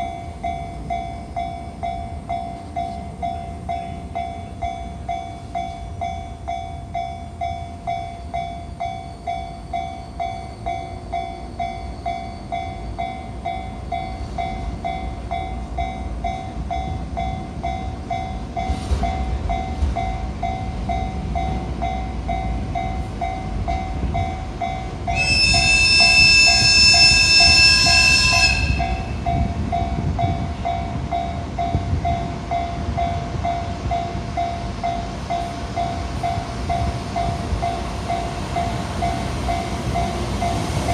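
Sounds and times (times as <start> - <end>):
freight train rumbling: 0.0 - 40.9
level-crossing alarm ringing: 0.0 - 40.9
locomotive horn blast: 25.2 - 29.2.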